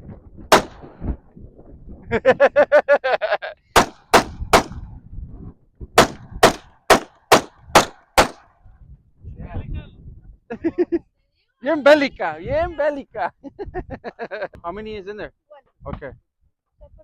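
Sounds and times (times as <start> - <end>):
gunshots: 0.5 - 1.1, 3.8 - 4.8, 6.0 - 8.5.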